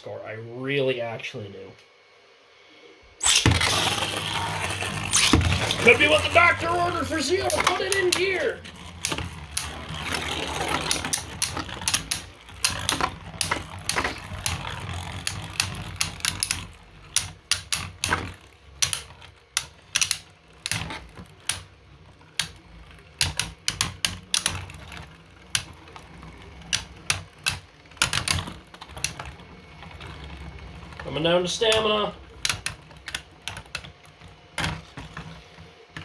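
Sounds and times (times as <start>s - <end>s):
plastic spinning tops clicking: 3.2s - 36.0s
low spinning whir: 3.4s - 23.2s.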